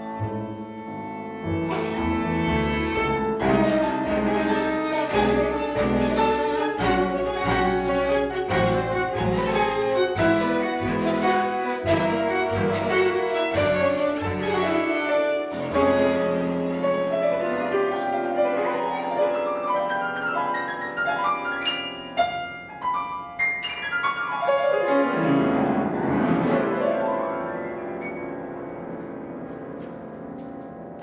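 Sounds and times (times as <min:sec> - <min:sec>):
violin: 0:00.0 - 0:22.7
cello: 0:00.0 - 0:23.6.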